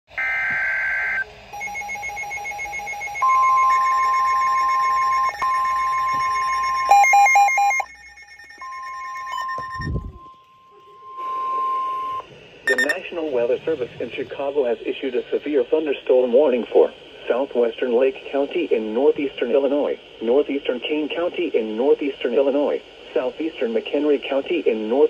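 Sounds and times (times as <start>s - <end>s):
steady high alarm tone: 0.2s - 13.0s
pulsing electronic alert beeps: 1.6s - 13.0s.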